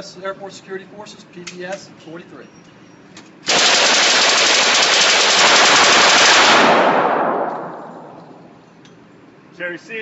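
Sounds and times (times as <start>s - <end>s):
submachine gun full-auto burst: 3.5s - 7.3s
gunshot echo: 5.4s - 8.4s.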